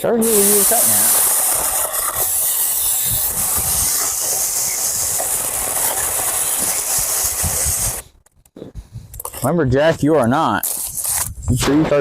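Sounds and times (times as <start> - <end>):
chainsaw cutting through a tree: 0.2 - 8.0.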